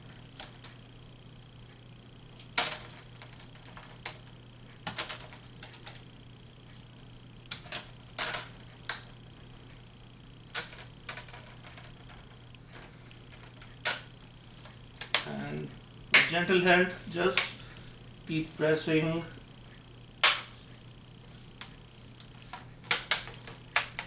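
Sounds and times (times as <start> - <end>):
faint high whine: 14.0 - 22.9.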